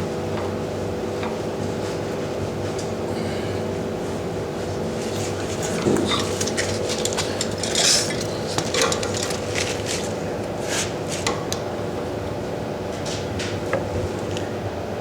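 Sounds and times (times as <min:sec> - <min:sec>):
metal tools clinking: 0:06.0 - 0:09.7.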